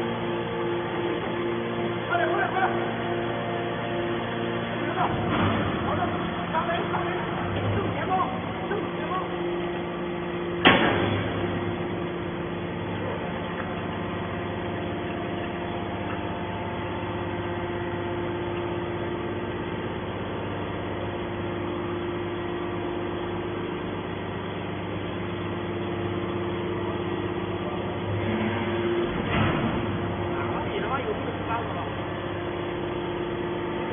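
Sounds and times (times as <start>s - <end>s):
machine humming steadily: 0.0s - 33.9s.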